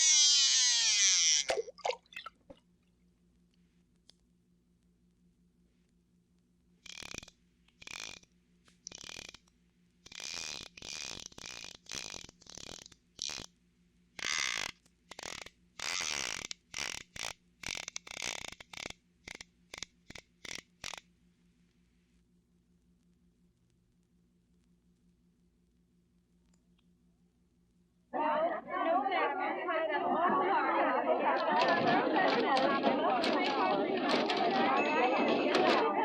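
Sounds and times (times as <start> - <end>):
fishing reel whirring and ratcheting: 6.8 - 8.3, 8.9 - 13.5, 14.2 - 21.1.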